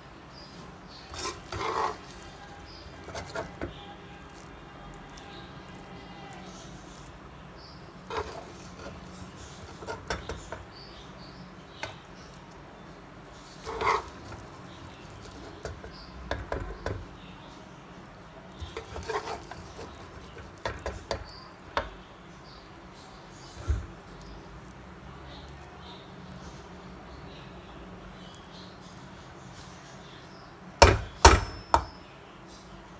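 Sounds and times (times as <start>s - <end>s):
utensils clinking on cookware: 1.0s - 4.4s, 8.1s - 10.8s, 13.5s - 17.2s, 18.6s - 22.0s, 30.8s - 32.0s.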